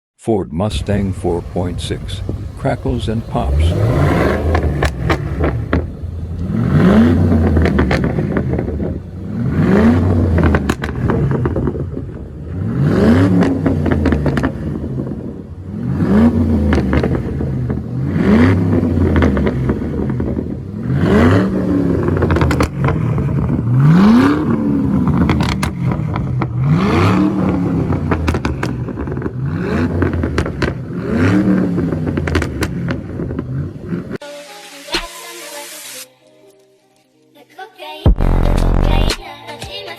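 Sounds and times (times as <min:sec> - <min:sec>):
car engine revving: 0:00.6 - 0:34.2
exhaust popping and crackling: 0:00.6 - 0:34.2.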